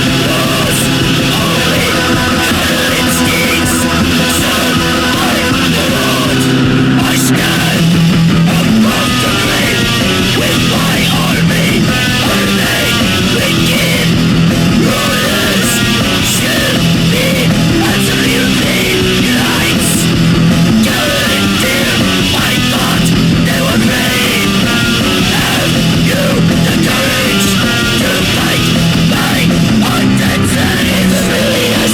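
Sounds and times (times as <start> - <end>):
distorted guitars: 0.0 - 31.9
drums: 0.0 - 31.9
shouted vocals: 0.0 - 31.9.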